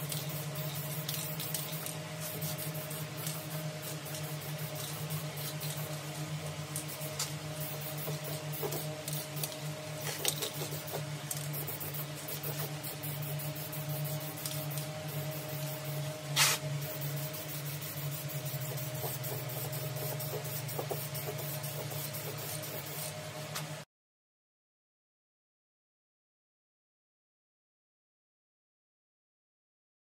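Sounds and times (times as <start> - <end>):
steady mechanical hum: 0.0 - 23.9.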